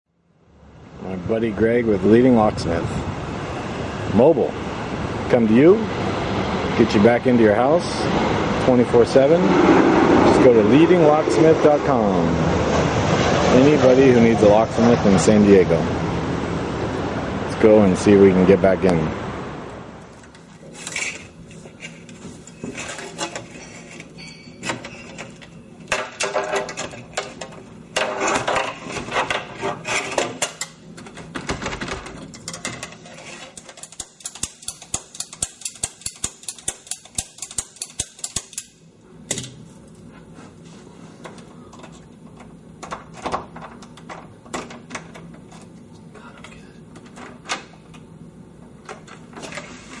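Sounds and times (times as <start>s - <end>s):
lock picking clicks and scrapes: 32.3s - 38.7s.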